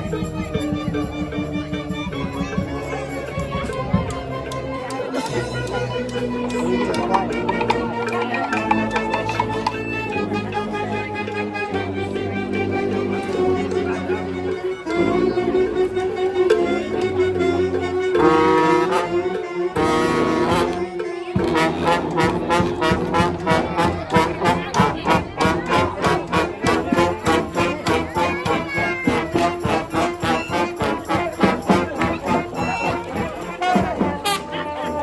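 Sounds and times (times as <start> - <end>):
brass band playing: 0.0 - 35.0
fast steady beat: 18.8 - 35.0.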